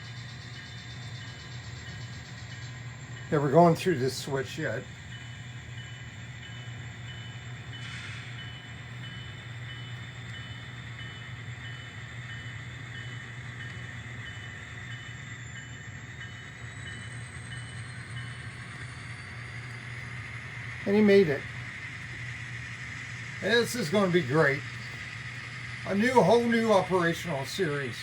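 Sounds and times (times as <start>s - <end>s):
diesel engine hum: 8.8s - 28.0s.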